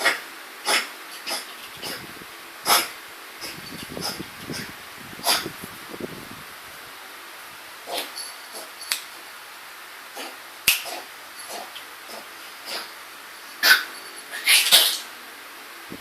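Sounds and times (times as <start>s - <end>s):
dog coughing: 0.0s - 5.5s, 10.2s - 12.9s, 13.6s - 15.1s.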